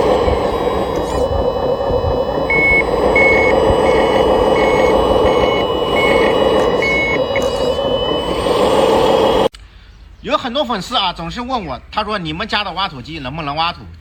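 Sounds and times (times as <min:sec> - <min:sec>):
engine rumble: 0:00.0 - 0:09.5
reversing alarm beeping: 0:00.0 - 0:09.5.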